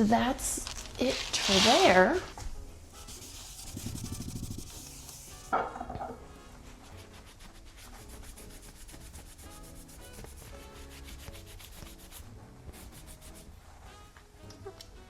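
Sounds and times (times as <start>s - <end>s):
soft background music: 0.0s - 15.0s
cloth wiping a shelf: 0.9s - 2.3s, 3.0s - 5.5s, 6.3s - 13.6s.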